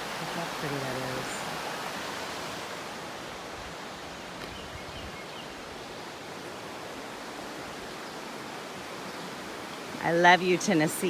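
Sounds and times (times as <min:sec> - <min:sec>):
water rushing over rocks: 0:00.0 - 0:04.6.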